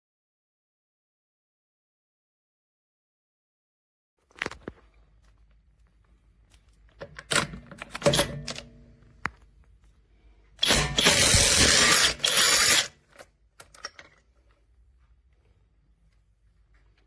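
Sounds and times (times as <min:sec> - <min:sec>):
tool handling clicks and knocks: 0:06.8 - 0:09.5, 0:10.6 - 0:14.6
impact wrench running: 0:10.6 - 0:13.3.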